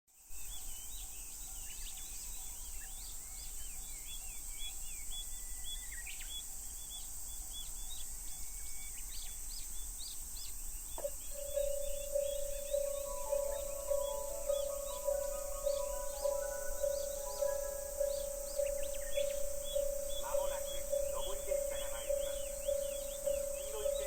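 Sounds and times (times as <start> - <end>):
birds chirping: 9.6 - 24.0
steady high hiss: 10.4 - 24.0
level crossing warning bell: 11.0 - 24.0.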